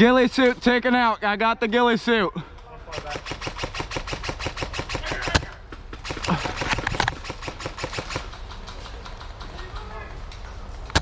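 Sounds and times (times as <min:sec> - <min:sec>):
airsoft gun automatic fire: 0:02.9 - 0:09.5
loud crack: 0:03.0 - 0:09.8.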